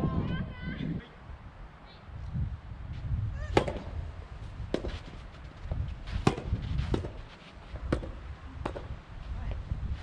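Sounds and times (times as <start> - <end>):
wind buffeting microphone: 0.0 - 10.0
tennis racket hitting ball: 3.5 - 4.0, 4.7 - 5.2, 6.1 - 8.9.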